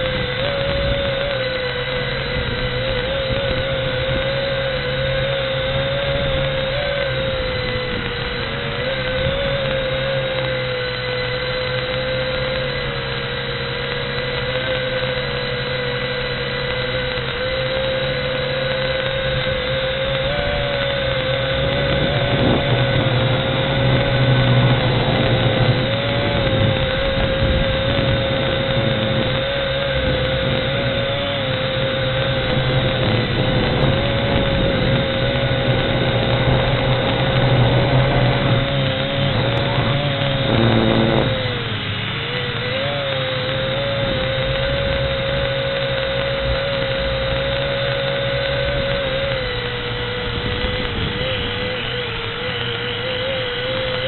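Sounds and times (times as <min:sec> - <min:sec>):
quadcopter motors whining: 0:00.0 - 0:54.0.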